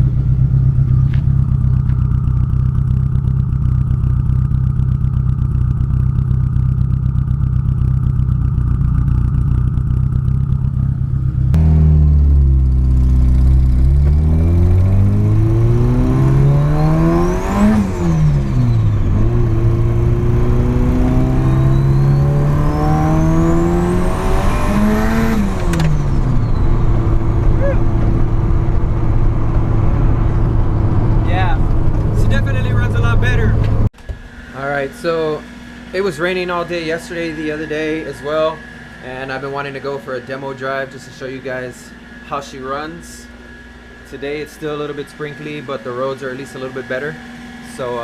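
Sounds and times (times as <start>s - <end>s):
car engine idling and revving: 0.0s - 48.0s
turbo whistle: 21.3s - 22.5s, 26.3s - 28.1s.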